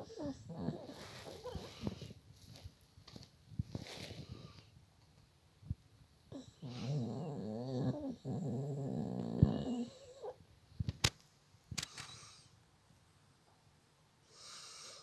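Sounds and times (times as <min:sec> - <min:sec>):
dog snoring: 0:00.0 - 0:02.0, 0:06.3 - 0:10.4.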